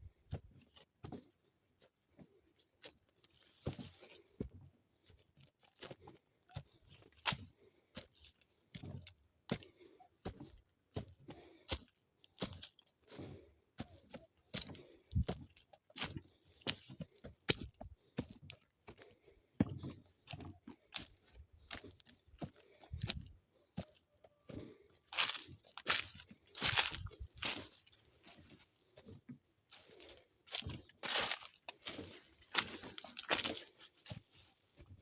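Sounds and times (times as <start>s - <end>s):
short crunches: 24.6s - 35.0s.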